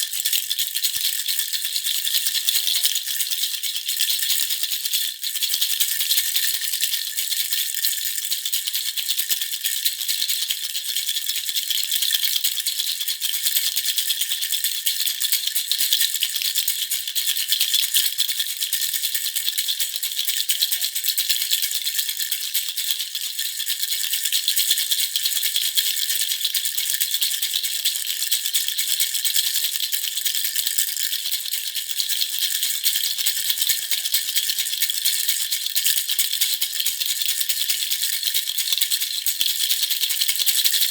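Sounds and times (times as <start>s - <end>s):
baby rattle shaking: 0.0s - 40.9s.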